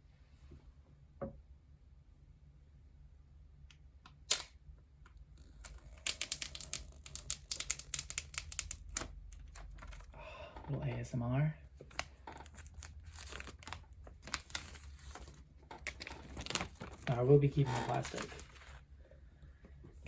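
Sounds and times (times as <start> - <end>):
packaging seal click: 4.2 - 4.5
packaging crackling and tearing: 5.4 - 10.2, 11.8 - 18.8.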